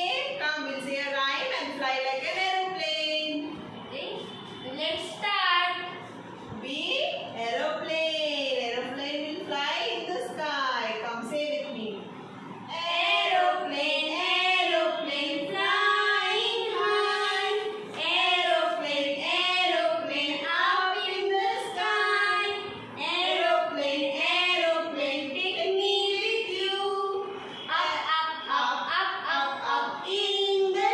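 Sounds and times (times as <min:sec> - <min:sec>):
high voice singing unaccompanied: 0:12.7 - 0:30.9.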